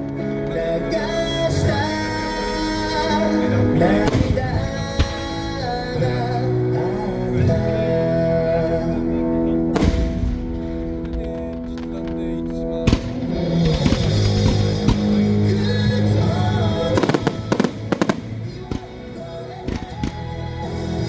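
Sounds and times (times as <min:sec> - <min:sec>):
music with singing voice: 0:00.0 - 0:21.0
sharp crack: 0:17.0 - 0:18.9.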